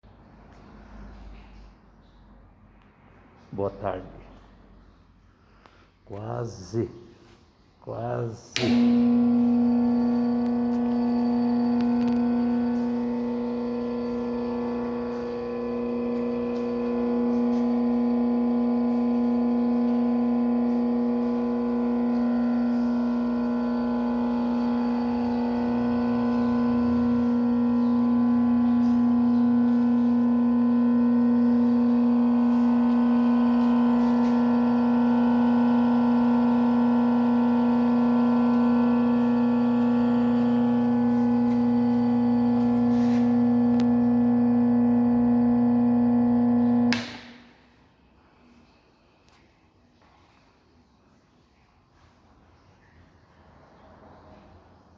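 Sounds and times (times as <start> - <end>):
motor humming: 8.5 - 47.4.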